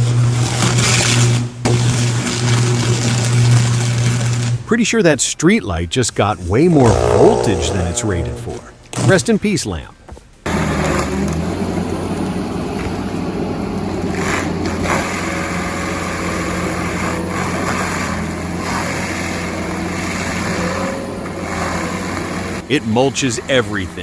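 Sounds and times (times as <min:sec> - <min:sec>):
mulcher diesel engine grinding: 0:10.5 - 0:23.6.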